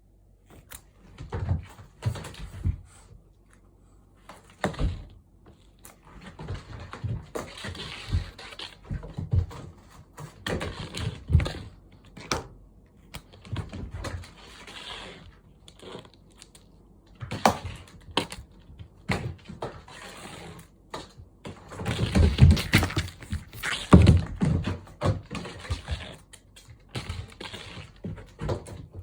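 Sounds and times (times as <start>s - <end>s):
cats playing with toy: 17.2s - 29.0s.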